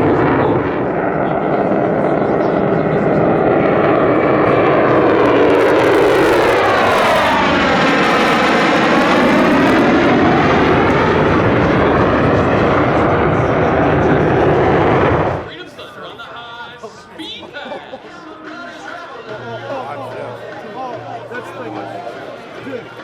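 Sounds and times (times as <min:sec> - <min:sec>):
fighter jet roar passing overhead: 0:00.0 - 0:15.5.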